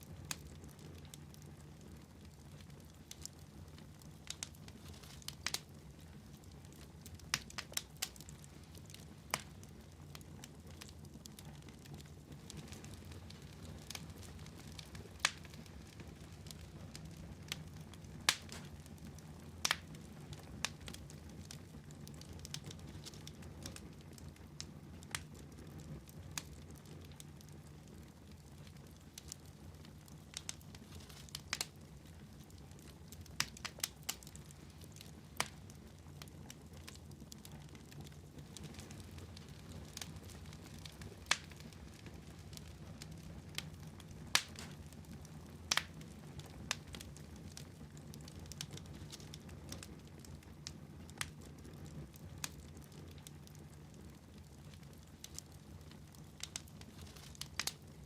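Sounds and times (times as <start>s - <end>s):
wood fire crackling: 0.0s - 58.0s.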